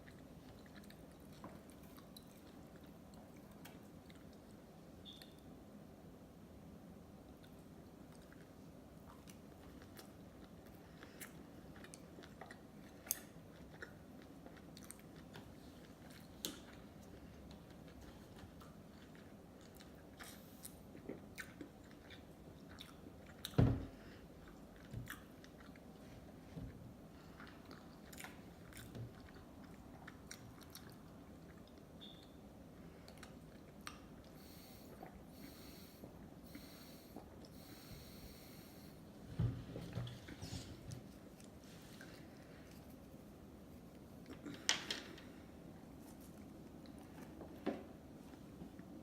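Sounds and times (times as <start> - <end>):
person chewing food: 0.0 - 5.3, 7.3 - 39.0.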